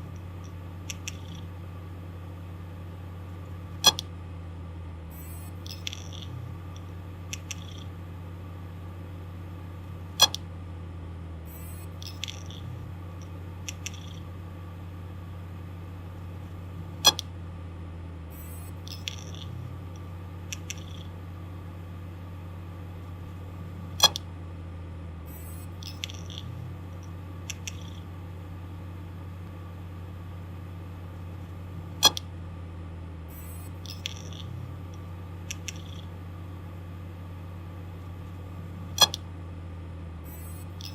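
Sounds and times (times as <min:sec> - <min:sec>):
hard disk drive clicking: 0:00.0 - 0:01.6, 0:05.4 - 0:08.0, 0:10.1 - 0:10.5, 0:11.9 - 0:14.4, 0:17.0 - 0:17.4, 0:18.7 - 0:21.2, 0:23.9 - 0:24.3, 0:25.7 - 0:28.2, 0:31.9 - 0:32.3, 0:33.5 - 0:36.1, 0:38.9 - 0:39.3, 0:40.4 - 0:40.9
hard disk drive humming: 0:00.0 - 0:40.9.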